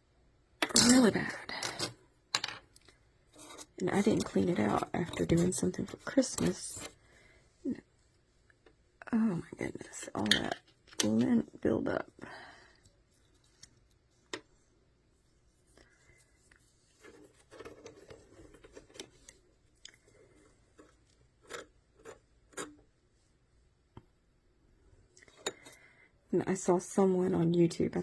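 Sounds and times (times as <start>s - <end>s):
scraping and rubbing: 3.3s - 7.0s, 15.3s - 19.4s, 20.1s - 22.8s.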